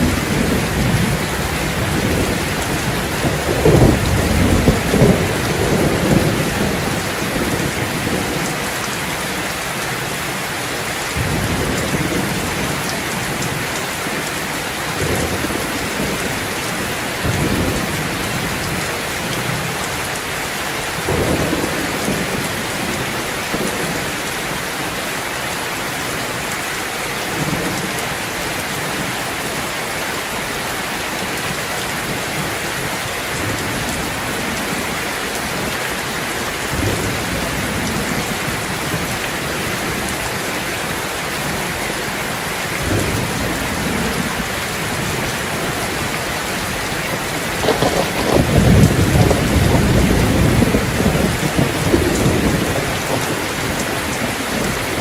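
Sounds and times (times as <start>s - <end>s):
rolling thunder rumbles: 0.0s - 8.7s, 11.2s - 19.8s, 21.0s - 24.6s, 36.4s - 40.3s, 42.6s - 55.0s
steady rain falling: 0.0s - 55.0s.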